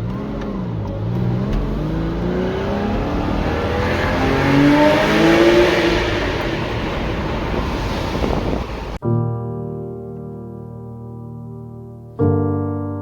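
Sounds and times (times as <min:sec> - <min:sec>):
car engine accelerating: 0:00.0 - 0:09.0.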